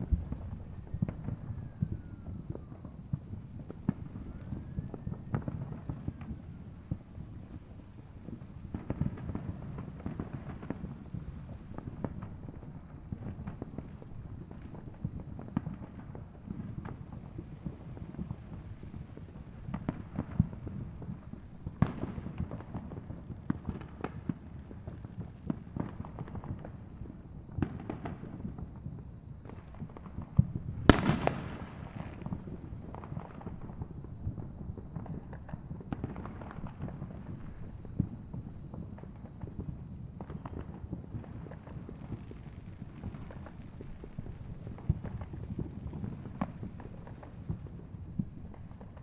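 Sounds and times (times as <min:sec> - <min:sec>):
fireworks popping and crackling: 0:00.0 - 0:49.0
loud firework bang: 0:30.8 - 0:33.3.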